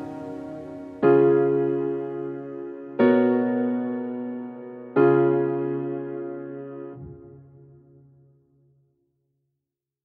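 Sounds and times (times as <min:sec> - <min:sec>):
electric piano chord: 0:00.0 - 0:07.8.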